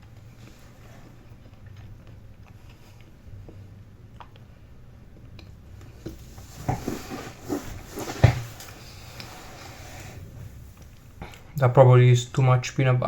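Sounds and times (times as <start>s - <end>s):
scraping and knocking: 6.1s - 8.8s
heavy thump: 8.0s - 8.6s.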